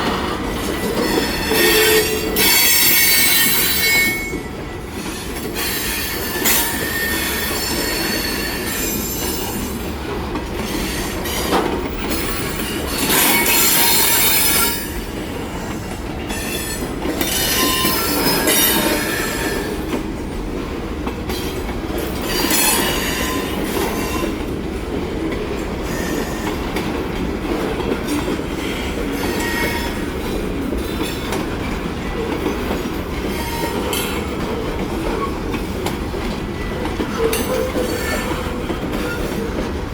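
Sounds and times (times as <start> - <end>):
train wheels clickety-clack on rails: 0.0 - 39.9
high-pitched wheel squeals: 0.9 - 4.5.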